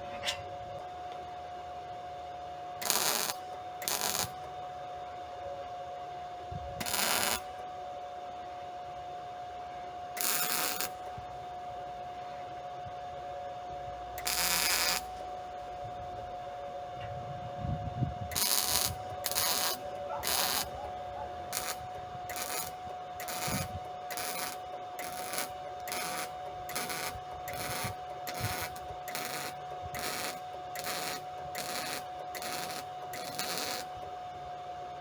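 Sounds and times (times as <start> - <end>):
faint high hum: 0.0 - 35.0
hand scraping metal: 18.3 - 33.9.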